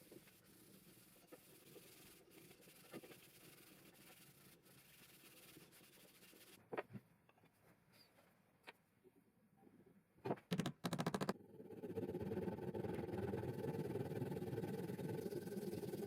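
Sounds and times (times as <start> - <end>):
faint rubbing: 0.0 - 6.6.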